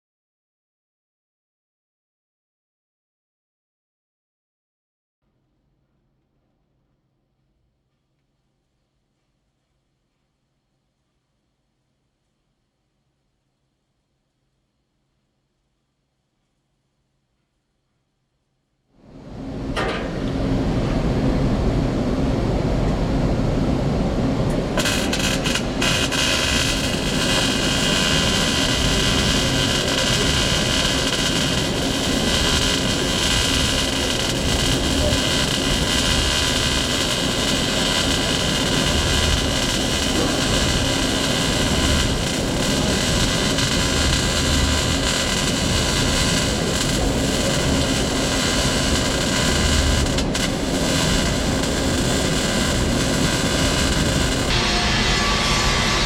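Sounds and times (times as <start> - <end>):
welder arc hissing: 24.8 - 56.0.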